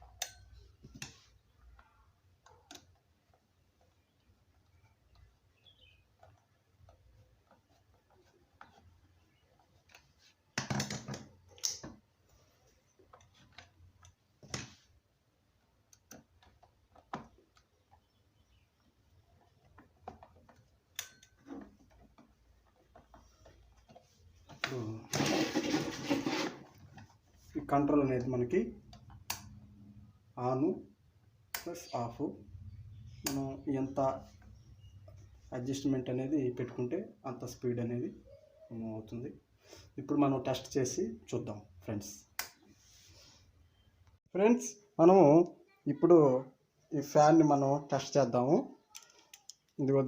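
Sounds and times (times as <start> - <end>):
small clicks of plastic parts: 15.8 - 18.2, 48.9 - 49.8
noisy scrape: 25.1 - 26.7.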